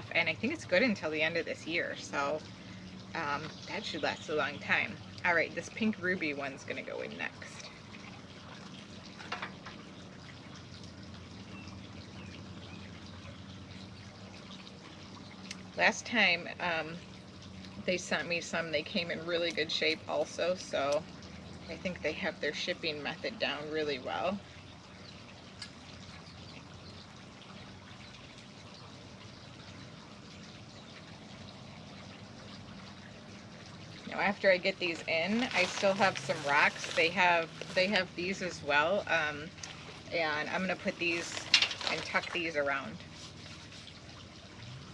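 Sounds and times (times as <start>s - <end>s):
water trickling: 0.0s - 44.9s
plant rustling in soil: 34.3s - 44.0s.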